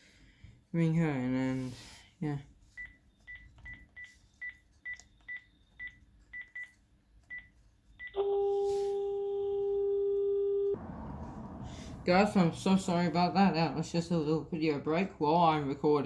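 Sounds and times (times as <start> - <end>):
phone call tone: 8.0 - 10.8.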